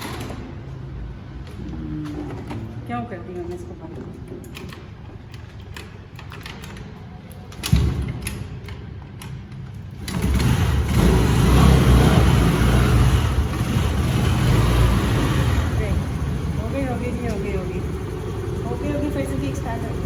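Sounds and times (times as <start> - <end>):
scooter engine starting: 9.9 - 20.0.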